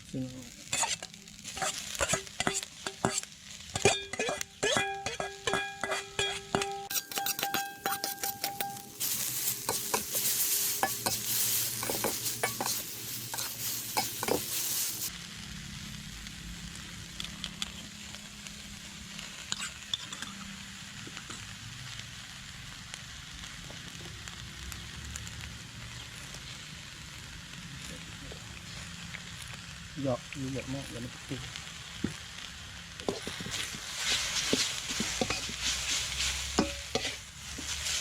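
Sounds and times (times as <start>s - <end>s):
noodles sizzling in a pan: 0.0s - 38.0s
spatula scraping a pan: 0.6s - 15.1s, 33.0s - 38.0s.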